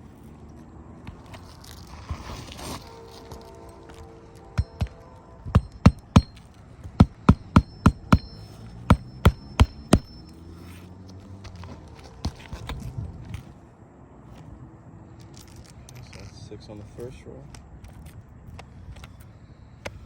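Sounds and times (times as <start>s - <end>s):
hammer driving nails into shingles: 4.6s - 5.0s, 5.6s - 10.2s.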